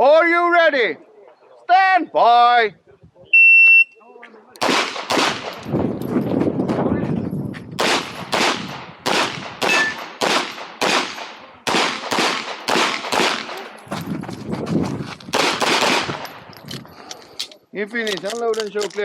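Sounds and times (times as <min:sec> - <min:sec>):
pistol shots: 0:04.6 - 0:05.7, 0:07.8 - 0:13.8, 0:15.3 - 0:16.2.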